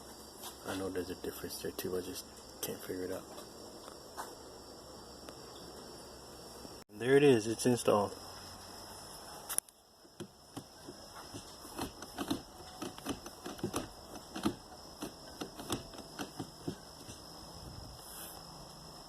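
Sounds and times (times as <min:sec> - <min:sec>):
gear shifter clicks and knocks: 0:10.2 - 0:17.2.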